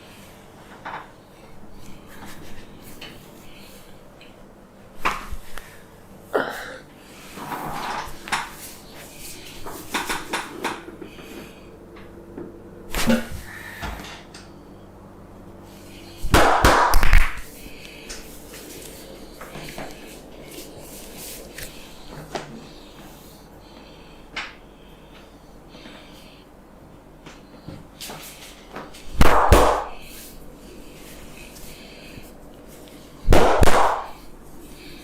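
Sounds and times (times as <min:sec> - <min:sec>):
hands slapping and tapping head: 0:05.0 - 0:05.3, 0:09.8 - 0:10.8, 0:16.3 - 0:17.4.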